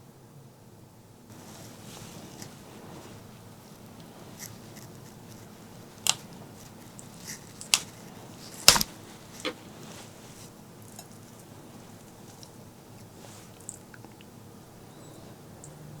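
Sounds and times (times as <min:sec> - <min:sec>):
crisp bites: 0:06.9 - 0:09.6.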